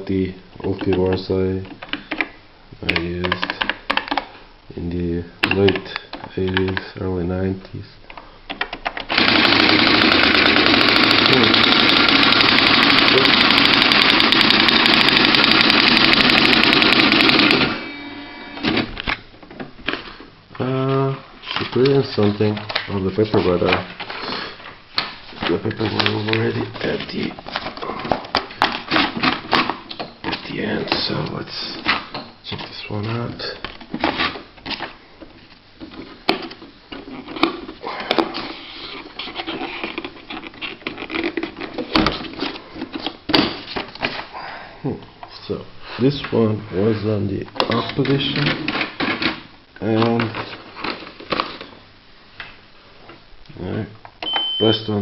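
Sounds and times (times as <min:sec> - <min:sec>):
electronic typewriter rattle: 0:09.0 - 0:17.8.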